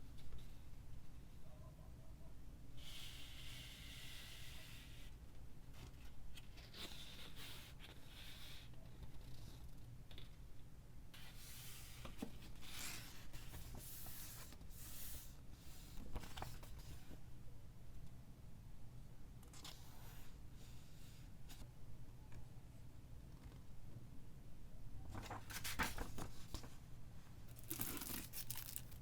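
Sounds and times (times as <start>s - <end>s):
packaging scraping and rustling: 27.5s - 29.0s.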